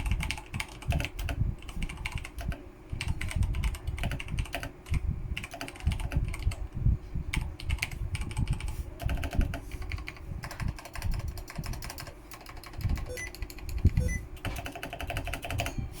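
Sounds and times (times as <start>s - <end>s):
mechanical keyboard typing: 0.0s - 6.6s, 7.3s - 15.8s.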